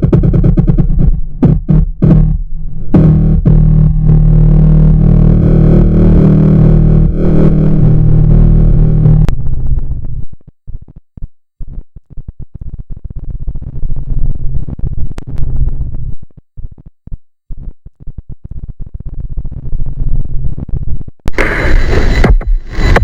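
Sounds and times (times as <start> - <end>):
stuttering bass-heavy electronic sound: 0.0 - 11.0, 19.1 - 23.0.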